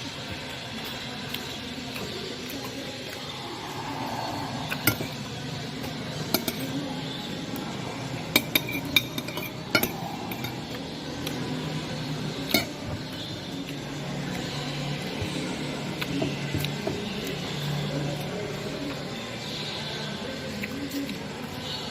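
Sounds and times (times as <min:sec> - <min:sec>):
utensils clinking on dishware: 0:08.3 - 0:10.8, 0:12.5 - 0:13.0.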